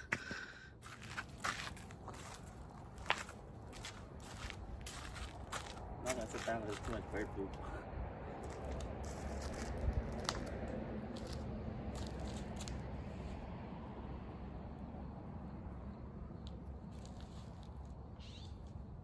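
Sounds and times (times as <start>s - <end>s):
steady low rumble: 0.0s - 19.0s
footsteps on dry dirt: 0.8s - 12.8s.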